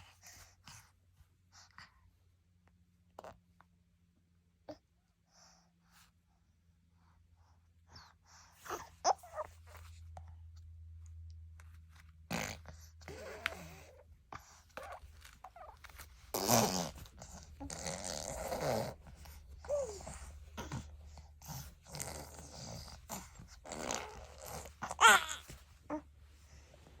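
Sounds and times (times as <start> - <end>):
baby blowing raspberries: 12.3 - 25.4
baby squeaks and grunts: 14.8 - 19.0, 21.9 - 25.6.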